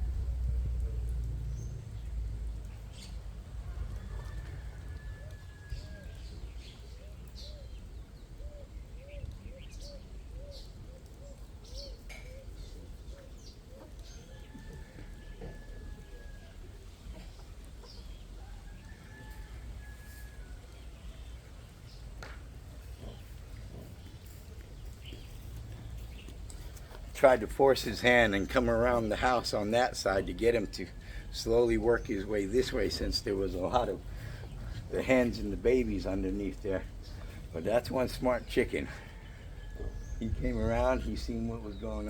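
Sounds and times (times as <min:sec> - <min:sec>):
steady low rumble: 0:00.0 - 0:04.1, 0:39.8 - 0:42.0
drawn-out bird calls: 0:01.5 - 0:42.0.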